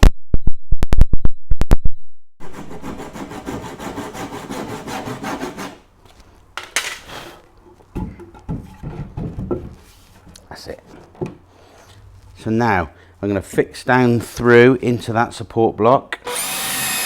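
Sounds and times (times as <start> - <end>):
knocks on wooden stair tread: 8.0 - 9.8.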